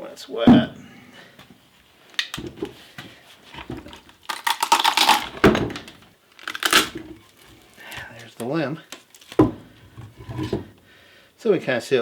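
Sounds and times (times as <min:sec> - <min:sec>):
wood fibres crackling and tearing: 0:03.6 - 0:09.4.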